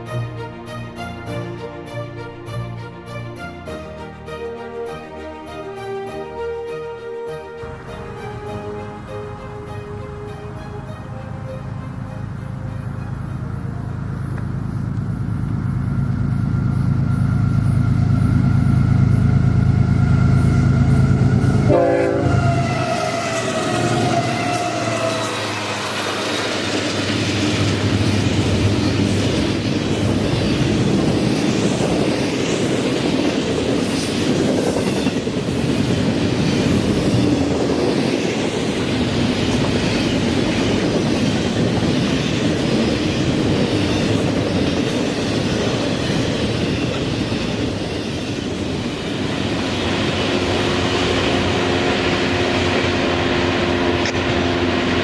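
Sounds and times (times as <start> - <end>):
train wheels clacking on rails: 22.8 - 55.0.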